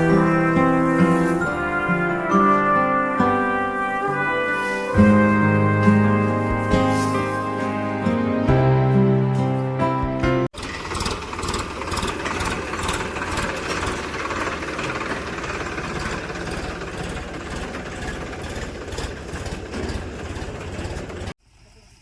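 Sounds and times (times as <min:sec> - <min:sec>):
background music: 0:00.0 - 0:10.5
harvesting machine engine clattering: 0:10.6 - 0:21.4.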